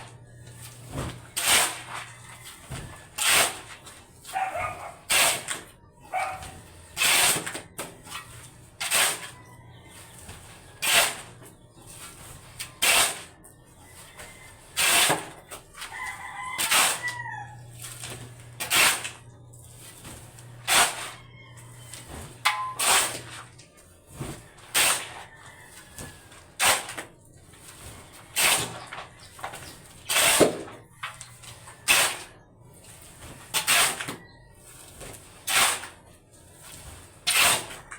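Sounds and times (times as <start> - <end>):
repeated loud work strokes: 0.0 - 9.4, 14.1 - 37.9
rooster crowing: 15.8 - 17.8, 20.9 - 22.8, 25.0 - 26.6.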